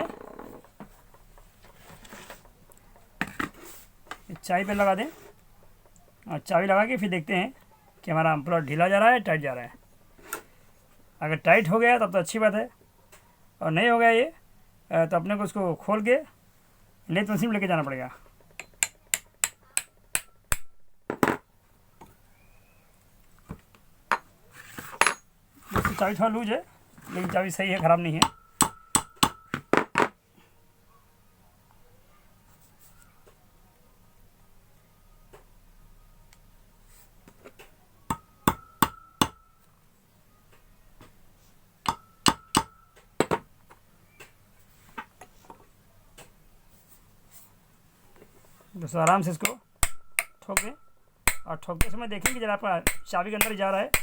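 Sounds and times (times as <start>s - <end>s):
hammer striking metal: 28.2s - 29.5s, 38.1s - 39.4s, 41.8s - 42.8s, 49.8s - 54.0s.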